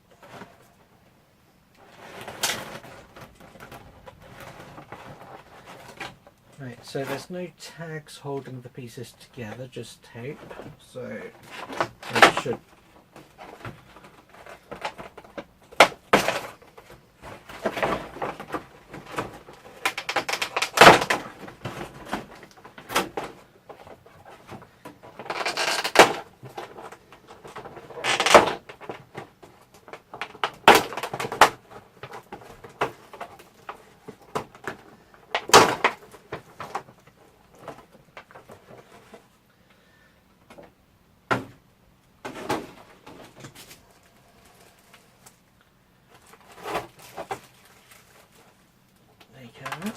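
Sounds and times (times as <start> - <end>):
plastic packaging crinkling: 10.2 - 24.4, 43.3 - 49.9.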